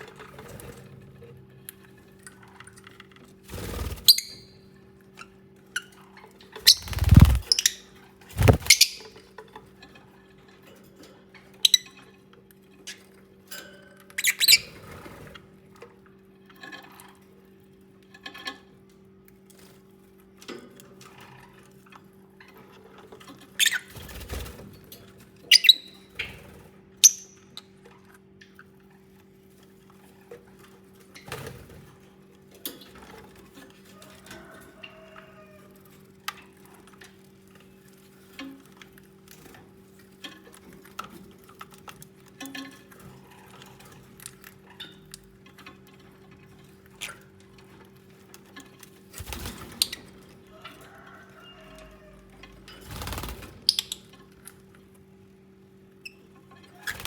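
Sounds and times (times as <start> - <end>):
birds chirping and squawking: 6.6 - 7.8, 8.4 - 9.2.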